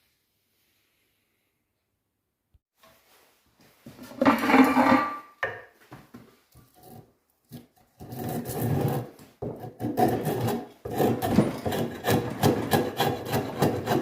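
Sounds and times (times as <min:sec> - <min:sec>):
hand tool scraping wood: 0:06.7 - 0:14.0.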